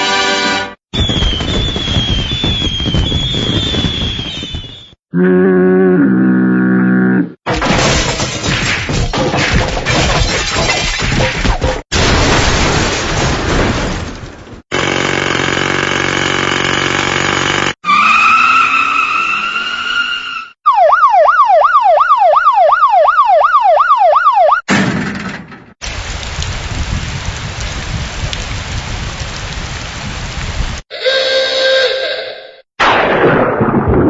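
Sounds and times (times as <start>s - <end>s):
yelp siren: 17.8s - 24.7s
rising siren tone: 17.9s - 24.6s.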